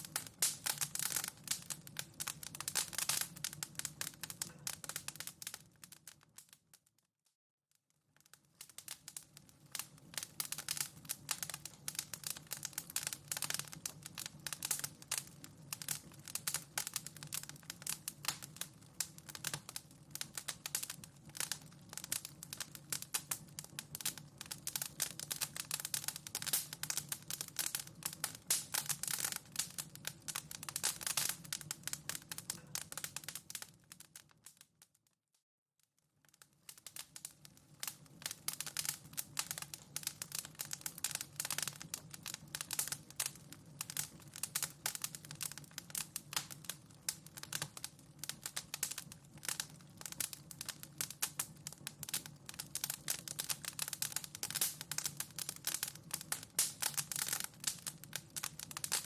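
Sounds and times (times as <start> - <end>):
wood fire crackling: 0.0 - 6.9, 8.1 - 34.6, 36.2 - 59.0.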